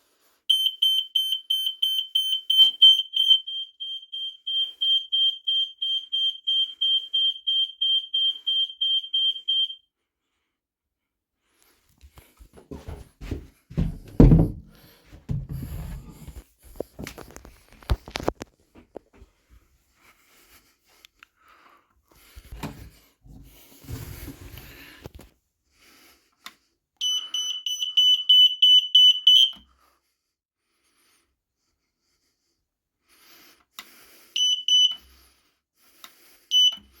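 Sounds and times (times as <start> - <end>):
smoke alarm pulsing beep: 0.5 - 9.8, 27.0 - 29.6, 34.4 - 35.1, 36.5 - 37.0
bumps and knocks: 12.6 - 16.2.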